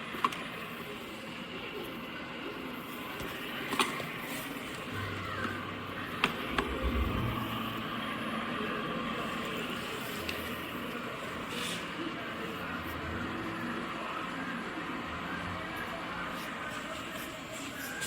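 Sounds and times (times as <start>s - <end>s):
low hum: 5.6s - 9.0s.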